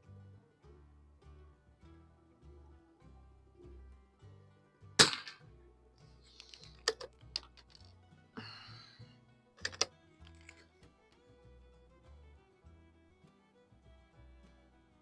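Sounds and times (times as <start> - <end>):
soft background music: 0.0 - 15.0
rifle shot: 5.0 - 5.4
rifle bolt clicks and scrapes: 6.2 - 7.9, 9.6 - 10.8.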